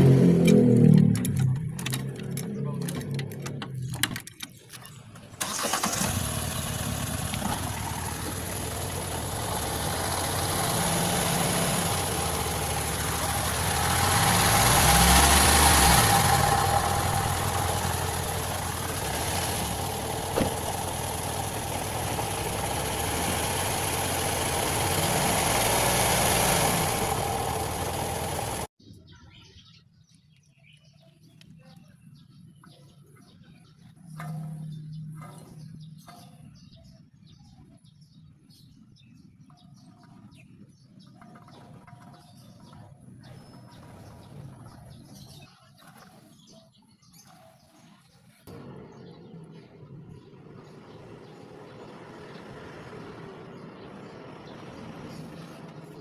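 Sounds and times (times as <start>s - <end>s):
car driving with road noise: 0.0s - 28.7s, 48.5s - 56.0s.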